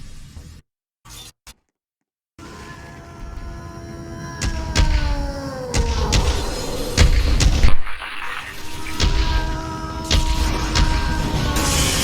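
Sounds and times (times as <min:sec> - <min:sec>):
tense ominous music: 0:02.4 - 0:12.0
heavy booms: 0:04.4 - 0:12.0.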